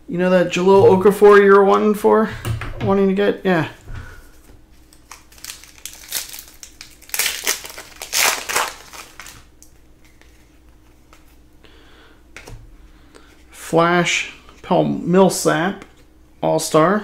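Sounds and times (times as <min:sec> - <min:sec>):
wrapper tearing and crinkling: 0:04.8 - 0:09.6.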